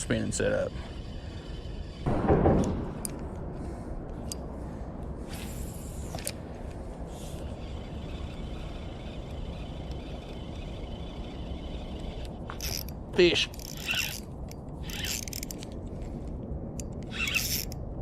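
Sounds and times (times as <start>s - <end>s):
fishing reel whirring: 0.0s - 2.1s, 7.2s - 15.6s, 17.0s - 17.8s
outdoor background noise: 0.0s - 18.0s.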